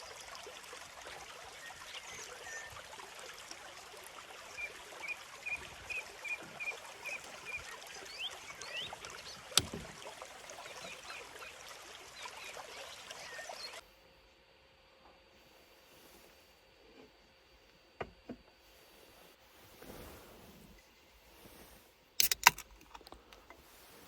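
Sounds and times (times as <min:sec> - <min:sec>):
stream babbling: 0:00.0 - 0:13.8.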